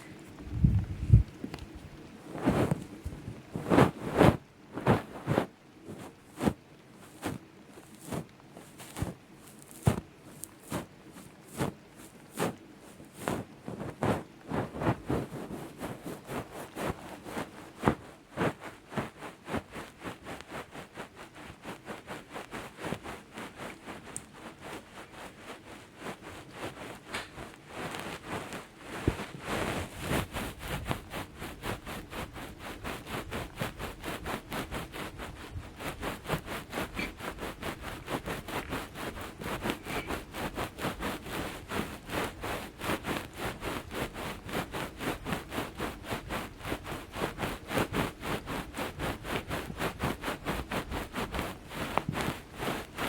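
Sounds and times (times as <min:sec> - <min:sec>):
scratching and rubbing on microphone: 0:00.0 - 0:53.0.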